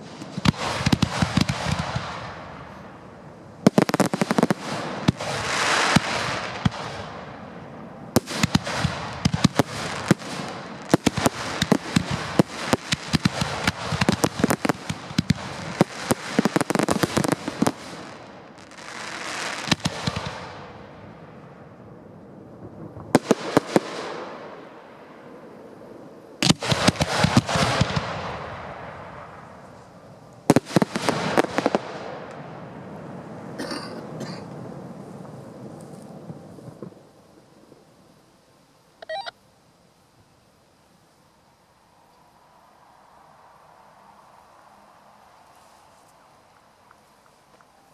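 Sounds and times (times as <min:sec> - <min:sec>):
fireworks bangs and crackling: 0:00.0 - 0:37.9
fireworks hiss: 0:00.0 - 0:47.9.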